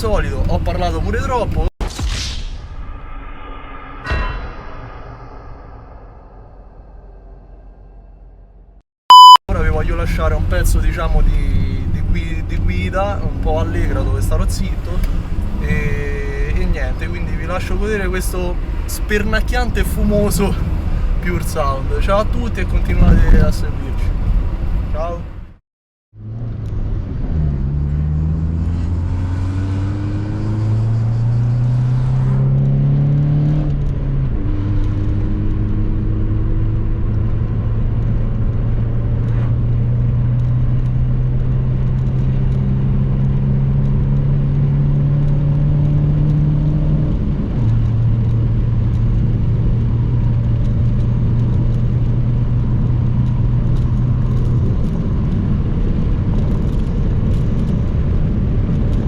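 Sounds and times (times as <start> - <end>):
car engine accelerating: 26.2 - 59.0.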